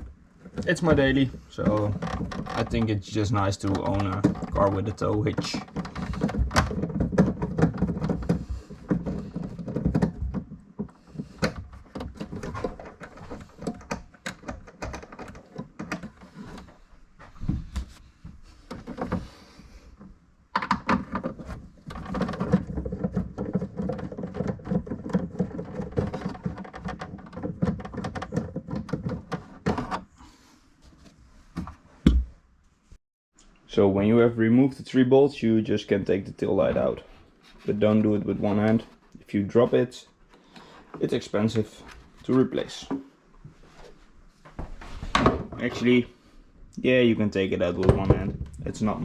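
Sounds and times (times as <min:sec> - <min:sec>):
small knocks and handling noise: 0:00.0 - 0:32.8, 0:47.6 - 0:49.0.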